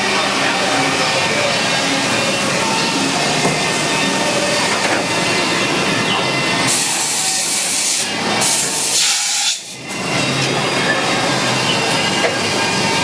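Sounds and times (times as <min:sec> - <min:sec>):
hiss: 0:06.7 - 0:09.8.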